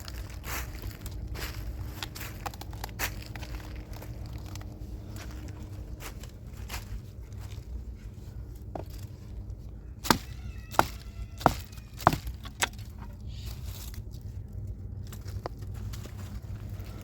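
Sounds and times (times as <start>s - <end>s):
axe chopping wood: 10.0s - 12.8s.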